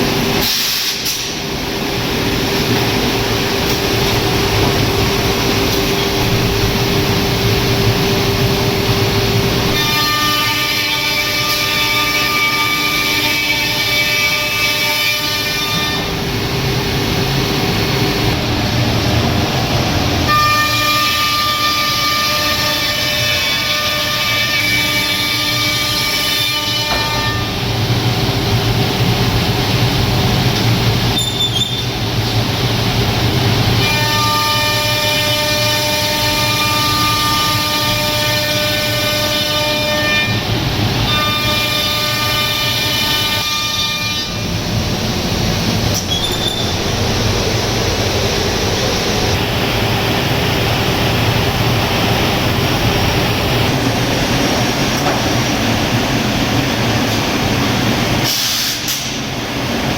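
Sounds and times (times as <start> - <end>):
steady mechanical noise: 0.0 - 59.9
high whine of spindle: 33.8 - 58.3.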